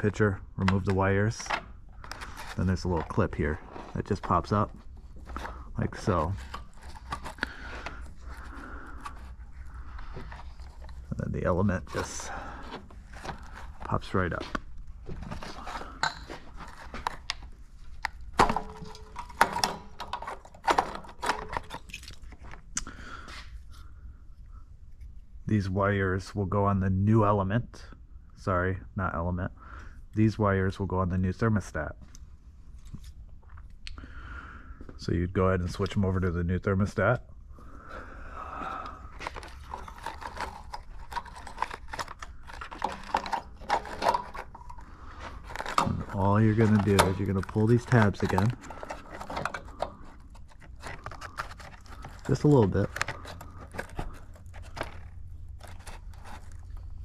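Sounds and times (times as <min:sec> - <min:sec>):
clicks and metallic knocks of handling: 0:15.4 - 0:22.5, 0:39.2 - 0:44.8, 0:45.4 - 0:56.5.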